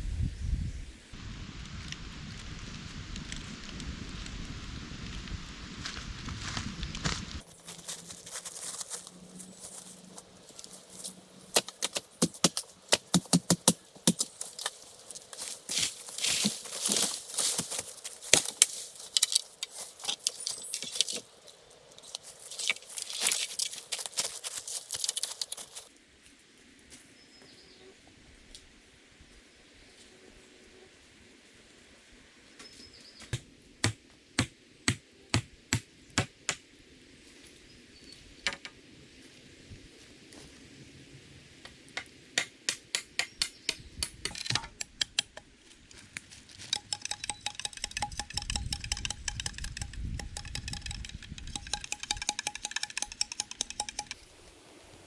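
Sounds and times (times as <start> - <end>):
dense crackling and rustling: 22.0 - 25.9
sharp knocks: 33.3 - 36.6.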